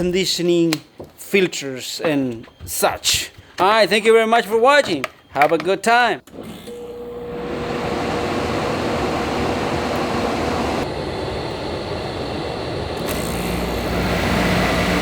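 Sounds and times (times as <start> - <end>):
compressor low hum: 6.6 - 15.0.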